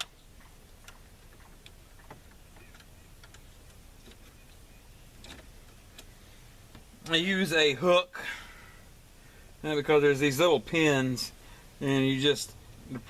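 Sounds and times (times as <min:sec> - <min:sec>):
light clicks of plastic knobs: 0:00.0 - 0:04.6, 0:05.2 - 0:07.2.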